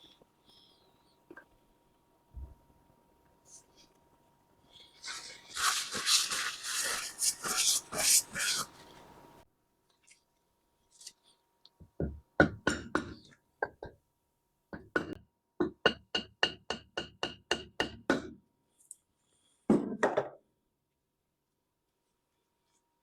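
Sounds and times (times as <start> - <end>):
hammer tapping on metal: 12.0 - 14.0, 14.8 - 18.4.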